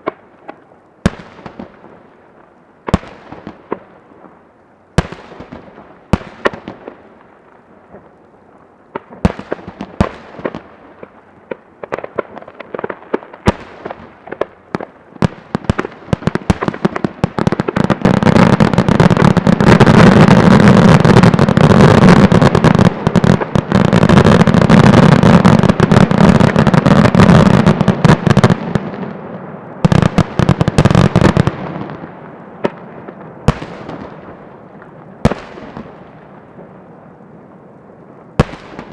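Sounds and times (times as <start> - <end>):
firework crackling: 0.0 - 38.9
firework bangs with echoes: 29.8 - 36.0, 38.4 - 38.9.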